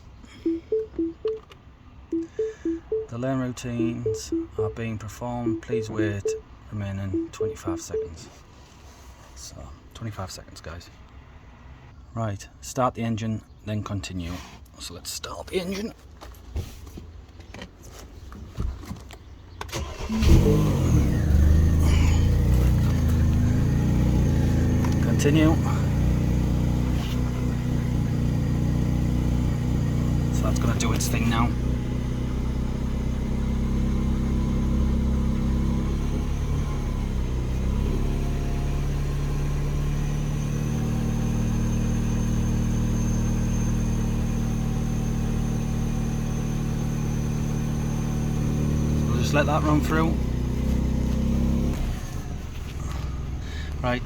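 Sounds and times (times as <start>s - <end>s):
car engine starting and idling: 0.4s - 1.6s, 2.2s - 3.1s, 5.4s - 6.4s, 7.1s - 8.1s, 19.5s - 45.4s, 47.8s - 54.0s.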